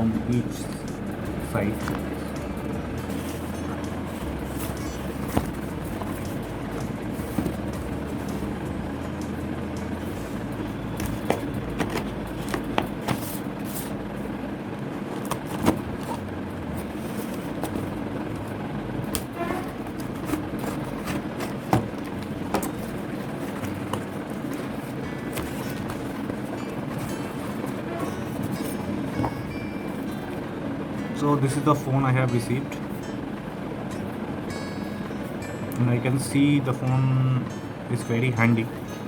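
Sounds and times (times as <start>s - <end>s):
steady low hum: 0.0s - 39.0s
cardboard packaging clicks and rustles: 10.9s - 14.0s, 15.1s - 29.5s.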